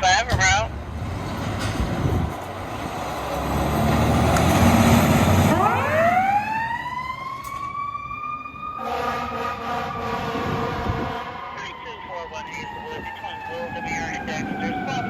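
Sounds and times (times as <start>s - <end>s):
fire truck engine: 0.0s - 15.0s
road noise: 0.0s - 15.0s
siren wailing: 5.5s - 15.0s.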